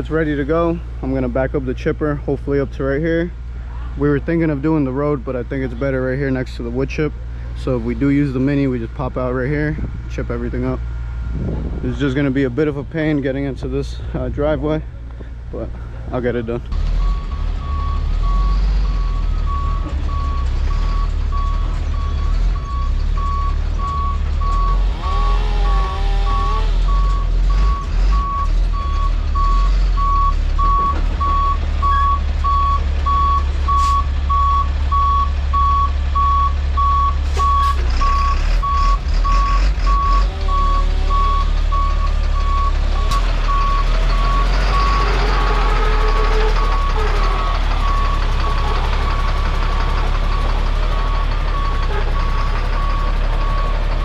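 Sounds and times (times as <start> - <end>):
truck engine rumble: 0.0 - 54.0
reversing alarm beeping: 17.0 - 54.0
gliding squeals: 43.8 - 50.4.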